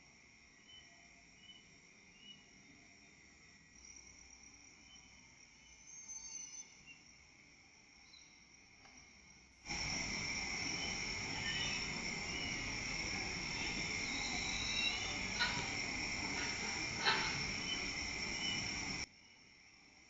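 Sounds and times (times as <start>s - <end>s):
crickets trilling: 0.0s - 20.0s
hiss: 8.8s - 20.0s.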